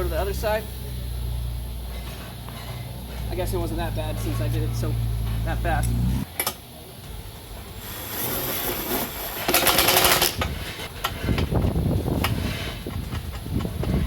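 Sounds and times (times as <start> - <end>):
metal clunking: 1.8 - 6.2
rapid mechanical rattling: 7.5 - 14.0.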